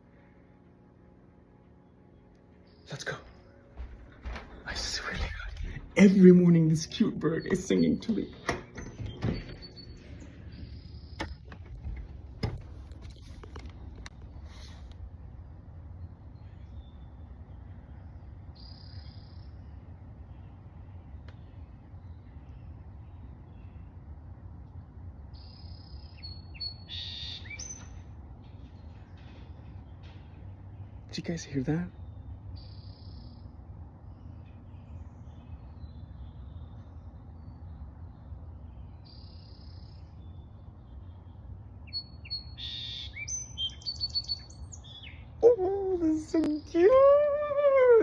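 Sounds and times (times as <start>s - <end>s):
steady low rumble: 0.0s - 26.6s
songbird singing: 1.7s - 14.4s, 15.2s - 48.0s.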